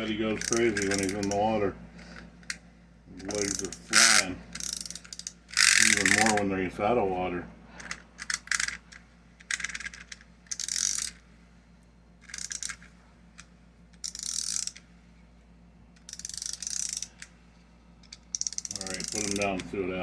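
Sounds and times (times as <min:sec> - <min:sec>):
wind-up toy clockwork clicking: 0:00.4 - 0:01.4, 0:03.2 - 0:06.4, 0:07.8 - 0:08.8, 0:09.4 - 0:11.2, 0:12.2 - 0:12.9, 0:14.0 - 0:14.8, 0:16.0 - 0:17.3, 0:18.0 - 0:19.6.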